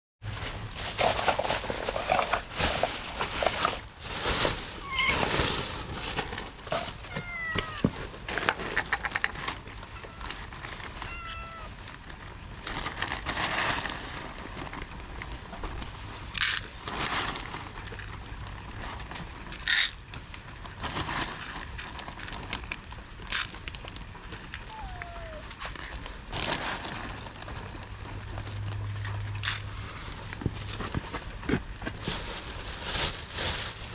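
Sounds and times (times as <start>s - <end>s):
rustling and crackling: 0.2s - 33.9s
cats meowing: 4.8s - 5.4s, 6.8s - 8.0s, 9.7s - 11.8s, 24.6s - 25.8s.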